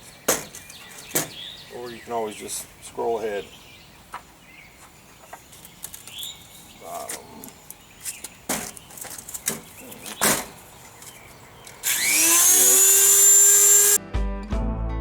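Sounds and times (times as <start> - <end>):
rotary tool whining: 11.7 - 14.0.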